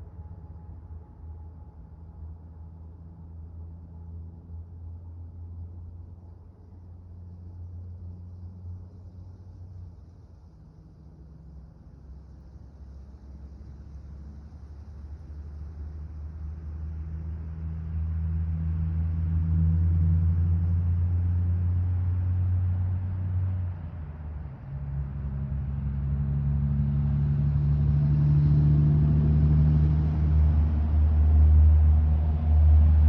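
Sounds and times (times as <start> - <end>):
car engine rumbling: 28.8 - 33.0.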